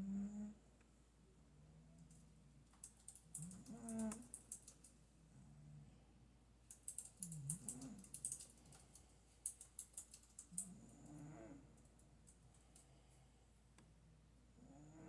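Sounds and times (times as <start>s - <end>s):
cat snoring softly: 0.0s - 0.6s, 10.6s - 11.7s, 14.5s - 15.0s.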